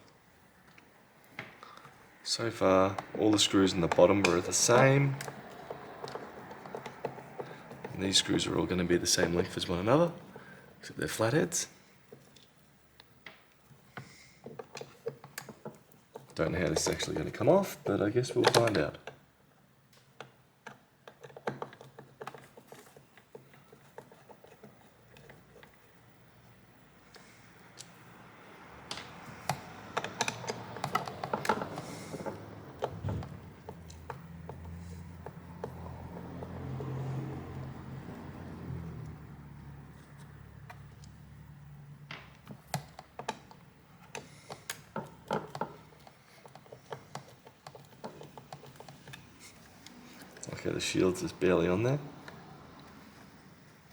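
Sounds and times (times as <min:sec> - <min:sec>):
screwdriver and plastic parts clicking: 0:12.1 - 0:19.2, 0:19.9 - 0:53.9.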